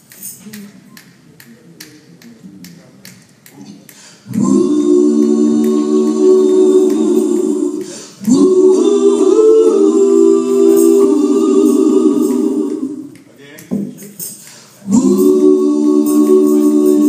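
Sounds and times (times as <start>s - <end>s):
choir singing a cappella: 4.2s - 13.3s, 14.4s - 17.0s.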